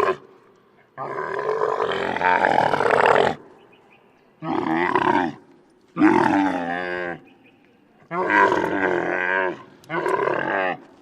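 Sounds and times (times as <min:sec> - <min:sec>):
camel groaning: 0:08.1 - 0:11.0.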